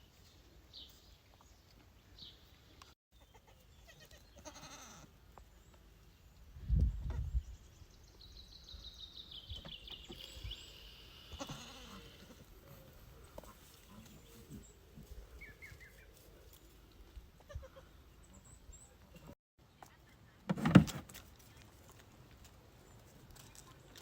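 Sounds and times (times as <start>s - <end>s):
goats bleating: 3.3s - 5.1s, 11.3s - 12.4s.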